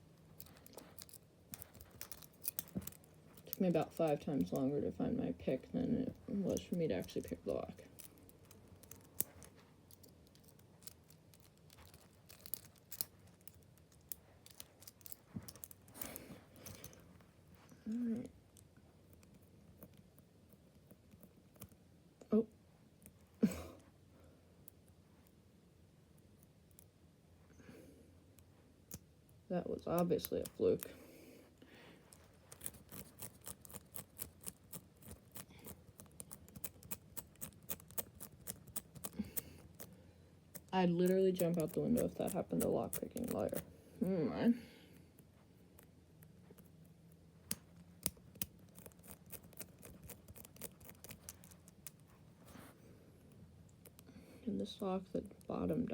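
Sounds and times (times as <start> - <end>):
padlock metal clicks and scrapes: 0.3 - 4.6, 6.5 - 17.1, 32.1 - 40.7, 47.5 - 52.1.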